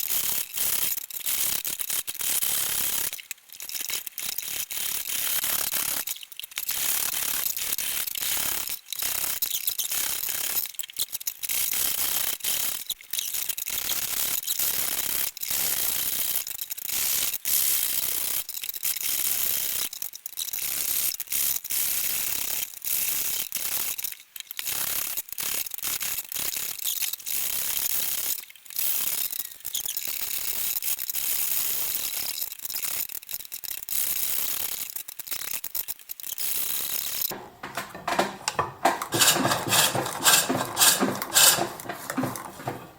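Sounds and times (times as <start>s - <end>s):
turning tool scraping wood on lathe: 37.3s - 42.9s.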